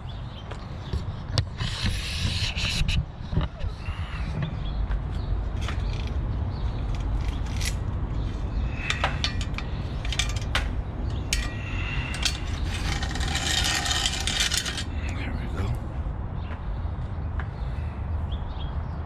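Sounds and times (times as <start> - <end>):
steady low rumble: 2.0 - 18.2
chain links rattling and scraping: 5.6 - 15.0
bicycle chain clicking on sprockets: 8.9 - 14.9.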